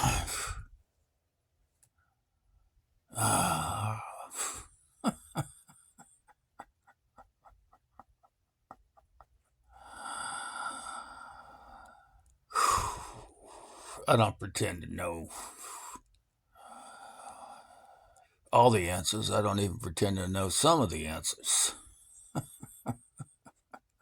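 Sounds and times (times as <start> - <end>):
man groaning: 0.0 - 0.6, 3.2 - 4.6
breathy exhale: 9.8 - 14.0.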